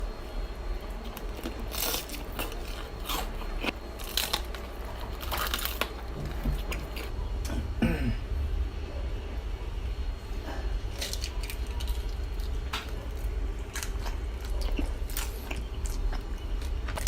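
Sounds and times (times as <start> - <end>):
fried pork skin crunching: 0.9 - 7.1, 10.9 - 17.0.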